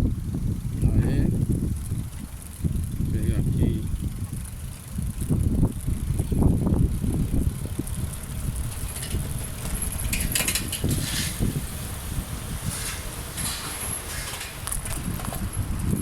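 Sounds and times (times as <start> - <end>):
wind buffeting microphone: 0.0 - 16.0
high rattling clicks: 8.7 - 11.0.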